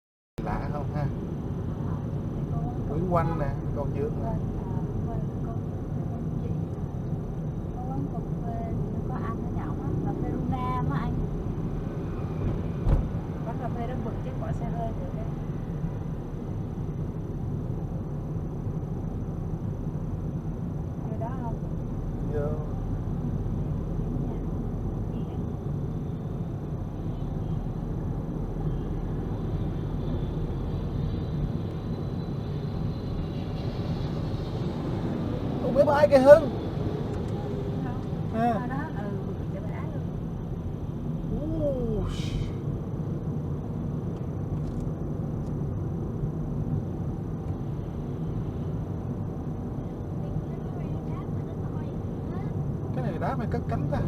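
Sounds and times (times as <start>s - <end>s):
moving vehicle rumble: 0.4s - 54.0s.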